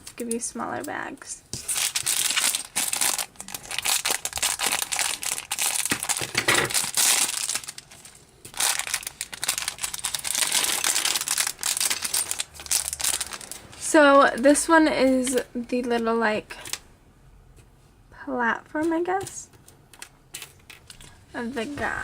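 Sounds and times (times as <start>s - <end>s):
plastic bag crinkling and tearing: 1.5s - 13.9s.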